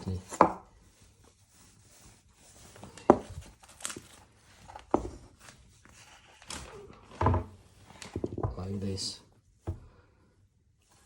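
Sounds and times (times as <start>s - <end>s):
wood knocking on wood: 0.3s - 0.6s, 3.0s - 3.4s, 4.9s - 5.2s, 7.2s - 8.7s, 9.6s - 10.0s.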